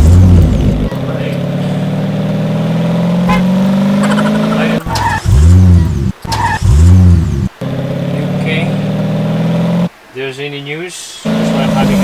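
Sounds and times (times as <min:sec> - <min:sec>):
toy race car engine sound effect: 0:04.0 - 0:06.9.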